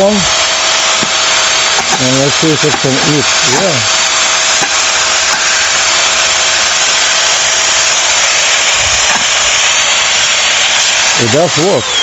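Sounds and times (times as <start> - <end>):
stick vacuum cleaner running: 0.0 - 12.0.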